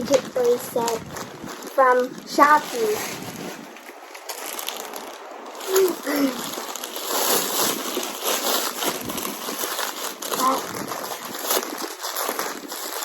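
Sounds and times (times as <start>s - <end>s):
plastic packaging crinkling: 0.0s - 13.0s.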